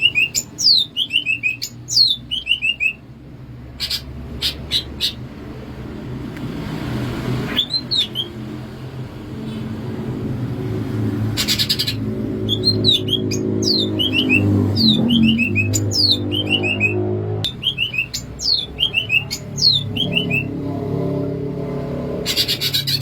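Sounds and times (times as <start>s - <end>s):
bird whistling song: 0.0s - 3.0s, 3.8s - 5.2s, 7.5s - 8.5s, 11.4s - 20.6s, 22.2s - 23.0s.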